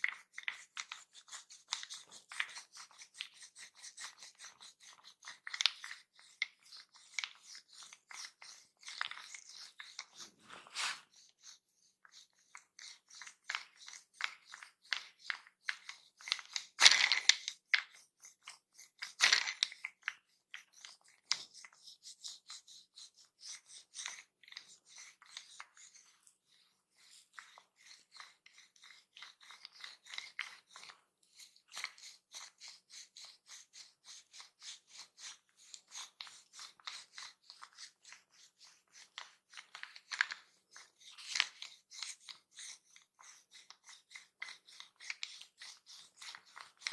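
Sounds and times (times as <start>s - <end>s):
strokes and pats on skin: 7.2s - 11.2s.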